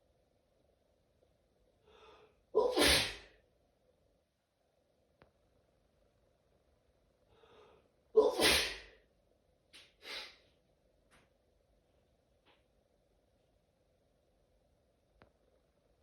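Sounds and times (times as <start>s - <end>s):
person sneezing: 2.6s - 3.4s, 8.2s - 9.0s.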